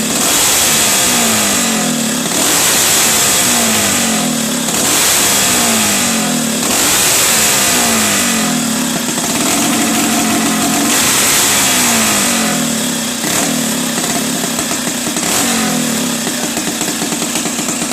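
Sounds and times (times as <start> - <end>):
small engine revving: 0.0 - 17.9.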